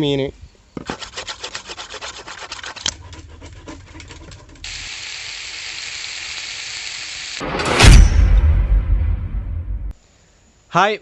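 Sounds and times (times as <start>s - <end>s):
food sizzling in hot oil: 4.6s - 7.4s.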